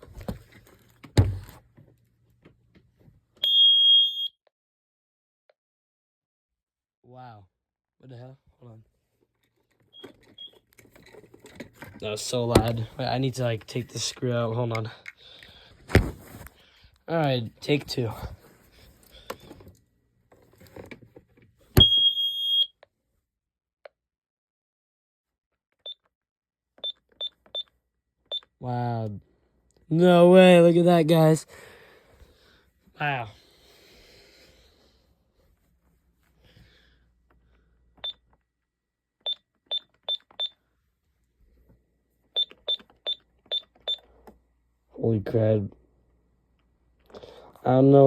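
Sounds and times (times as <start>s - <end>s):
keypad beeps: 9.9s - 10.6s, 21.8s - 22.7s, 39.3s - 40.6s, 42.4s - 44.0s
high keypad beeps: 21.8s - 22.7s.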